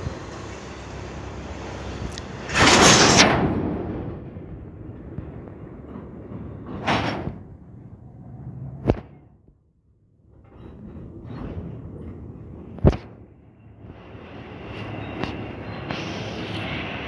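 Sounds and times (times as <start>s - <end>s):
freight train passing: 0.0s - 8.8s, 13.3s - 17.0s.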